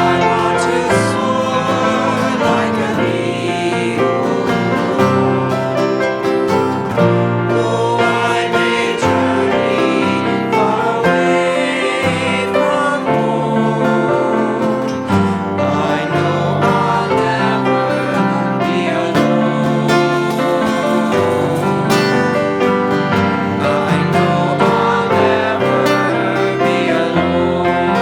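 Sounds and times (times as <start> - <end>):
acoustic guitar and banjo: 0.0 - 28.0
people singing: 0.0 - 28.0.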